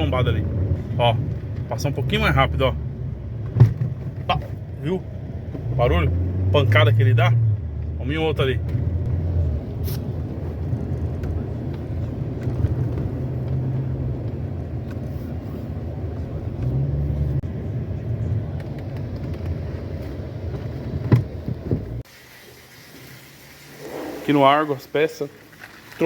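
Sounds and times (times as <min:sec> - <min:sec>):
car engine and road rumble: 0:00.0 - 0:22.1
suspension knocks over speed bump: 0:03.3 - 0:04.7, 0:18.5 - 0:22.0.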